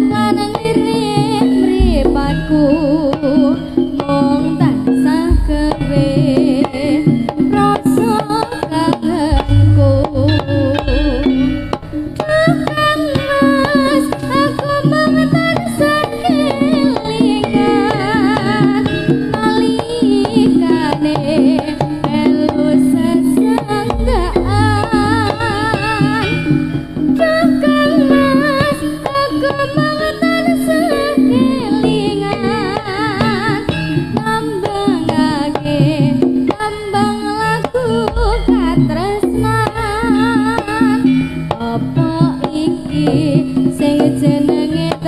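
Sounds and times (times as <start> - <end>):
hand drums beating: 0.0 - 45.0
pitched gamelan tones: 0.0 - 45.0
wavering sung melody: 0.0 - 45.0
deep low drum strokes: 1.8 - 3.1, 5.3 - 6.8, 9.3 - 12.2, 23.9 - 26.7, 38.1 - 40.0.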